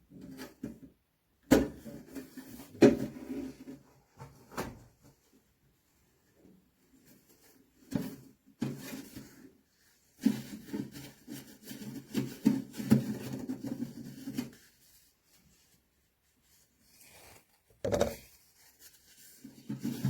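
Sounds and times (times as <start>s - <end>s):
objects rubbing and scraping: 16.8s - 20.0s
objects knocking: 17.8s - 18.3s.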